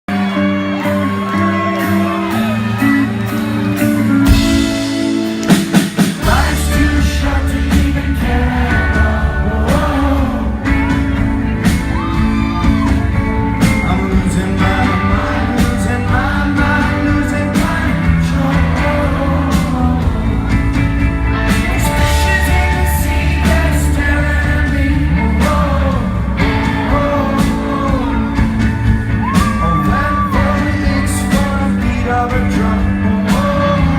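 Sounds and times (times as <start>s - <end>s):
lead singer singing: 0.1s - 33.9s
rock band playing live: 0.1s - 33.9s
drum hits: 4.3s - 8.4s.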